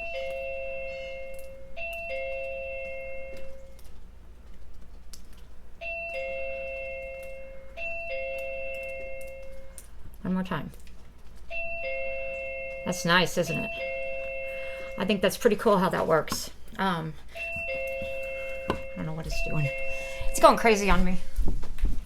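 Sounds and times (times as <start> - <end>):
doorbell ding-dong chime: 0.0 - 3.8, 5.8 - 9.8, 11.5 - 15.9, 17.3 - 20.7.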